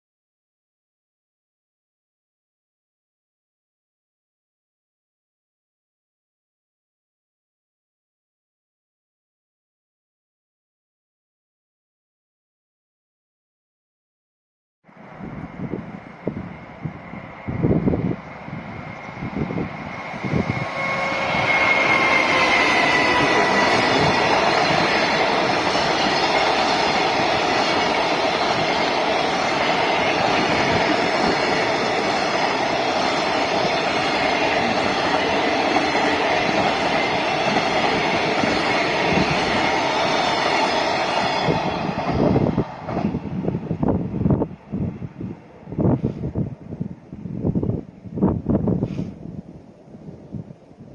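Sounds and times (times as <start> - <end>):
freight train rumbling over rails: 14.9 - 50.9.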